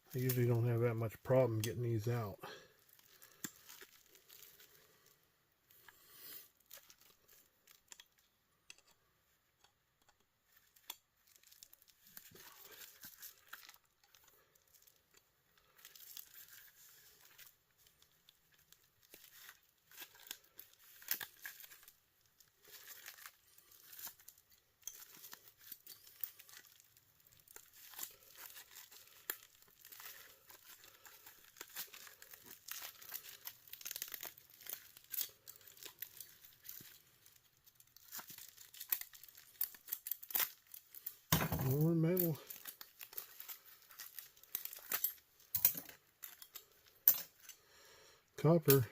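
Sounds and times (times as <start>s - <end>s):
metal parts clicking and scraping: 6.8s - 9.0s, 22.7s - 37.0s, 38.0s - 47.6s.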